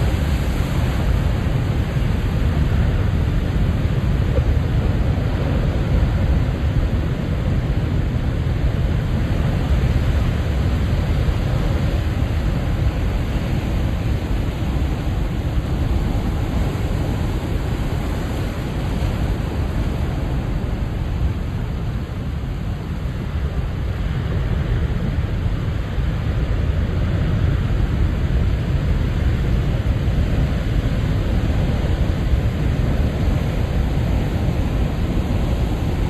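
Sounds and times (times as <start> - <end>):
ocean waves breaking and washing: 0.0 - 36.0.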